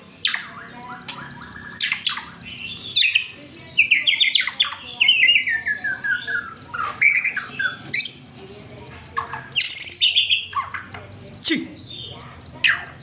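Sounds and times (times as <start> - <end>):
songbird singing fast song: 0.1 - 11.0.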